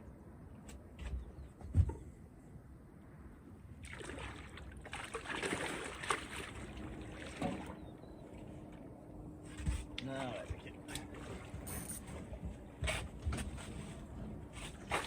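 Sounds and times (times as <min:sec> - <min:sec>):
water splashing and sloshing: 0:03.7 - 0:15.0.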